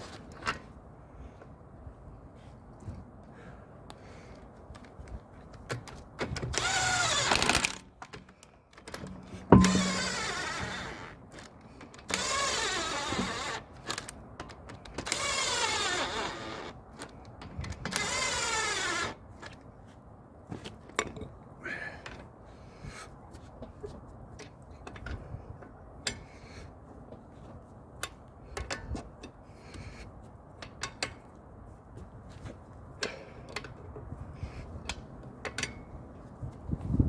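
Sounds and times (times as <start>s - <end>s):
impact wrench bursts: 6.6s - 7.8s, 9.4s - 11.2s, 12.1s - 13.7s
sharp metallic knock: 9.5s - 10.2s.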